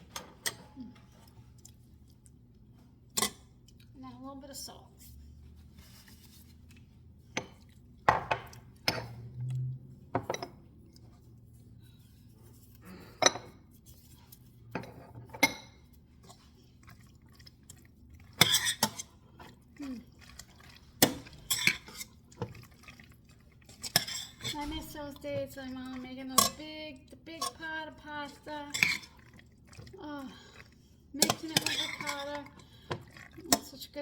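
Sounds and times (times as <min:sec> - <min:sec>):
utensil clinking against cookware: 0:31.2 - 0:33.8.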